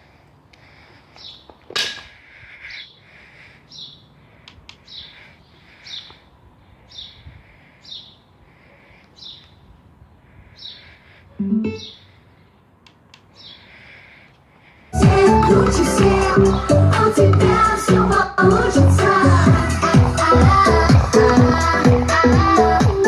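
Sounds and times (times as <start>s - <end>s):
bird chirping: 3.7s - 4.2s, 4.8s - 9.7s, 10.5s - 12.6s, 13.3s - 13.8s.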